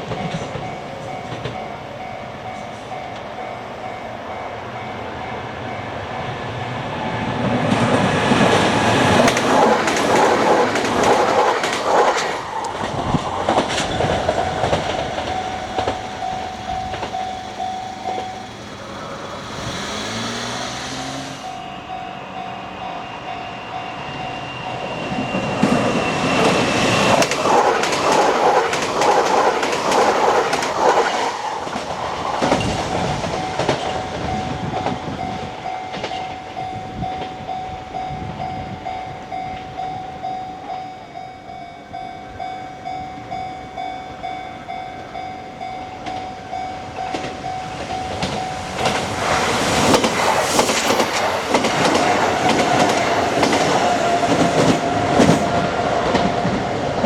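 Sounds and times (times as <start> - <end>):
level crossing warning bell: 0.0 - 11.8, 13.0 - 30.6, 32.6 - 56.8
train wheels clattering over rail joints: 7.4 - 21.6, 25.5 - 37.4, 46.0 - 57.0.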